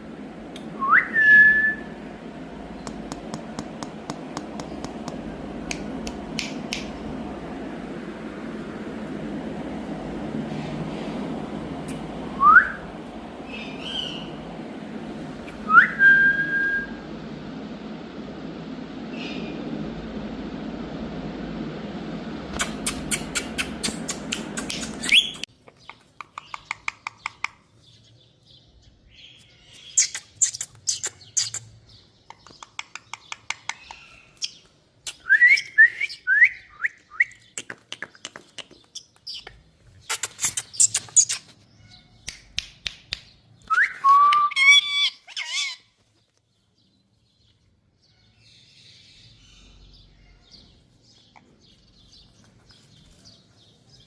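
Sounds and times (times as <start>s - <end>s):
steady rushing noise: 0.0s - 25.5s
parrot chirping: 13.4s - 14.4s, 22.6s - 27.6s, 29.7s - 31.7s, 32.3s - 42.6s, 43.7s - 45.9s.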